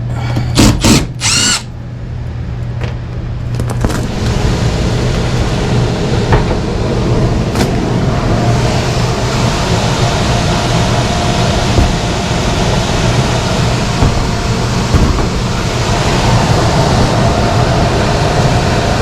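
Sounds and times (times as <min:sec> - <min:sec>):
blower rushing air: 0:00.0 - 0:02.0, 0:03.9 - 0:19.0
knocks on unit: 0:11.7 - 0:12.1, 0:14.0 - 0:15.5.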